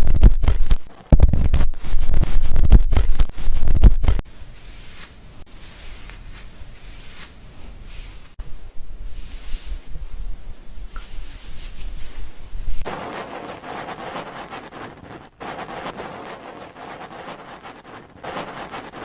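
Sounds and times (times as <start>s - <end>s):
quiet hiss: 4.3s - 16.9s
hands scrubbing lathered hair: 4.4s - 12.9s.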